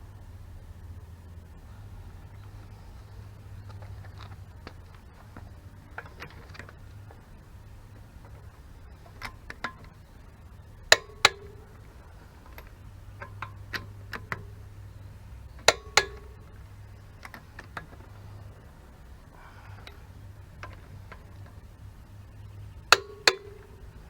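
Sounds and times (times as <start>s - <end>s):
light ticks: 0.0s - 24.0s
metallic tool clicks: 10.8s - 18.2s.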